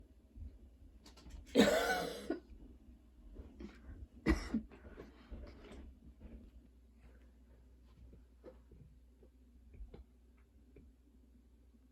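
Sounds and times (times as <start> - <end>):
girl coughing: 1.6 - 2.4, 4.2 - 4.6.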